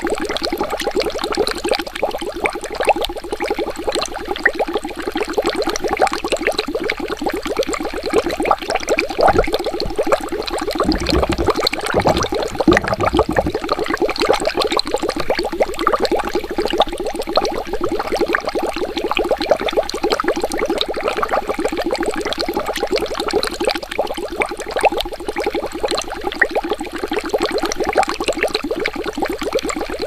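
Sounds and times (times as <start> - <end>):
water bubbling: 9.2 - 14.1.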